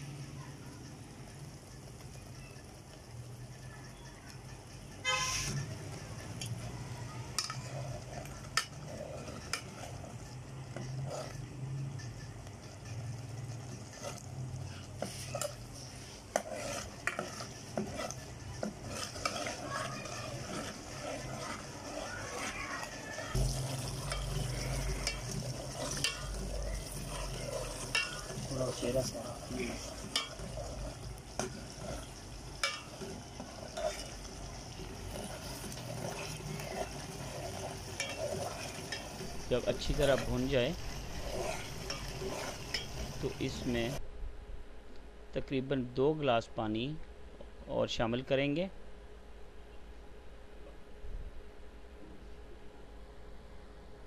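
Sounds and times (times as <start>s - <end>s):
light sizzle: 0.0s - 44.0s
spoon stirring and scraping pot: 0.8s - 44.0s.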